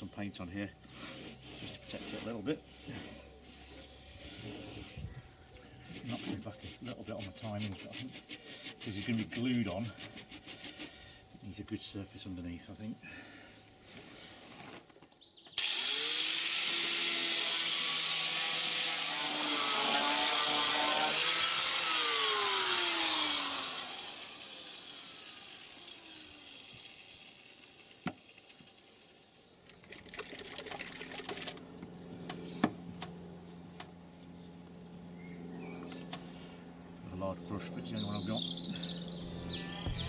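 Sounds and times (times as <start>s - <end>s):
birds chirping: 0.0s - 15.7s, 19.2s - 27.1s, 29.1s - 40.0s
grinder grinding metal: 15.6s - 29.4s.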